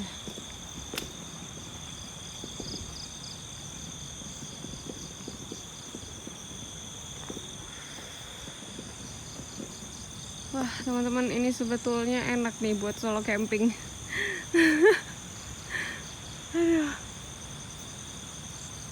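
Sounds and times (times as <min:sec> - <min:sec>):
wind rumble on microphone: 0:00.0 - 0:14.0
crickets chirring: 0:00.0 - 0:18.9.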